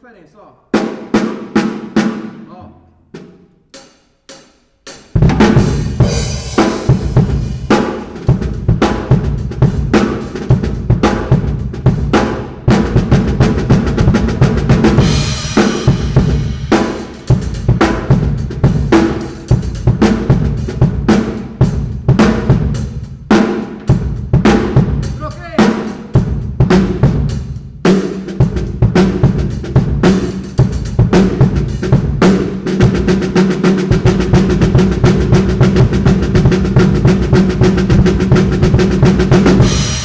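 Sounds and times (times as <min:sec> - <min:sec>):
drum kit groove: 0:00.7 - 0:40.0
snare drum strokes: 0:14.2 - 0:18.1.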